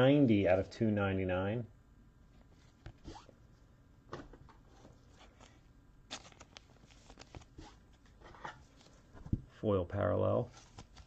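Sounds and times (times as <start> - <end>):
trading cards scraping and flicking: 4.7 - 9.0, 10.5 - 11.0.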